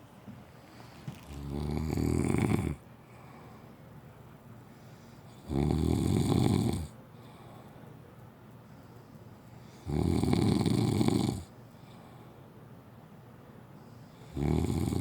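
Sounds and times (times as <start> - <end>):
man snoring: 1.3 - 2.8, 5.4 - 7.0, 9.8 - 11.5, 14.2 - 15.0.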